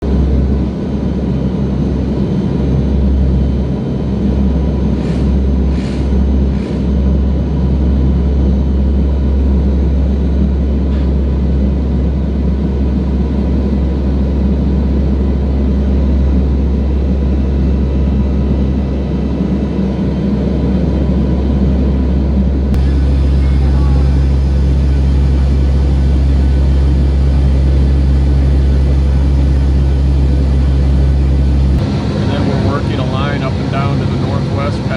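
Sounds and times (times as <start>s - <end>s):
turboprop engines droning: 0.0s - 34.9s.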